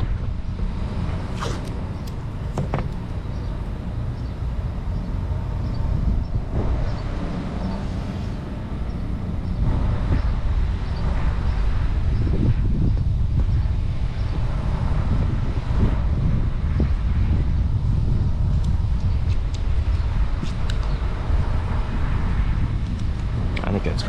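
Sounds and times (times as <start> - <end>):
traffic rumble: 0.0 - 24.0
wind: 0.0 - 24.0.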